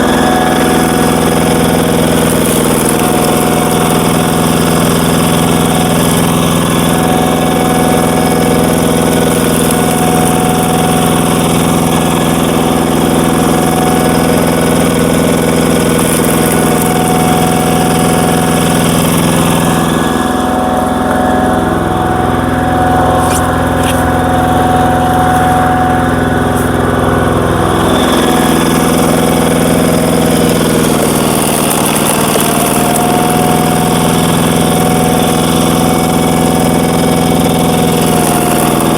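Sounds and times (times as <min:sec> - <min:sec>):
single-cylinder diesel engine running: 0:00.0 - 0:38.9.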